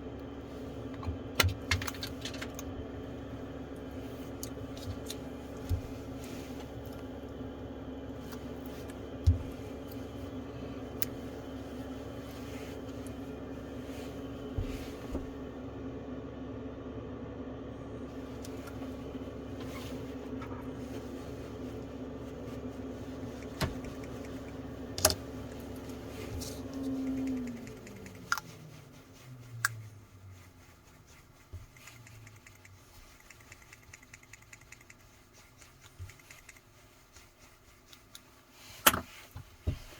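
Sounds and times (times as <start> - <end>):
electric motor humming: 21.5 - 30.4.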